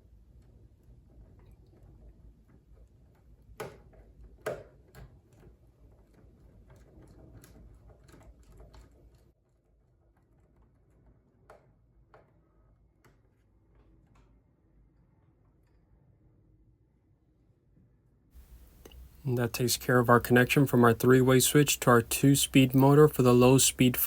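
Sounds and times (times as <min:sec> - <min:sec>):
faint clicking and tapping: 0:18.4 - 0:24.0.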